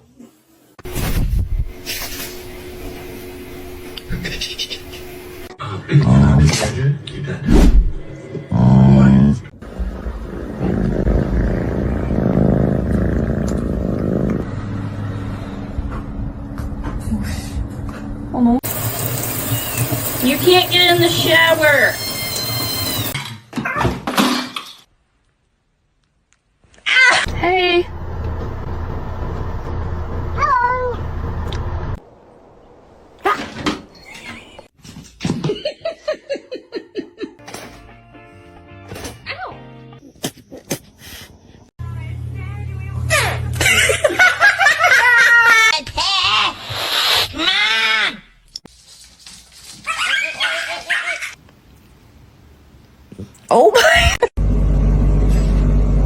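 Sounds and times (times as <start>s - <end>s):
cat purring: 9.8s - 14.4s.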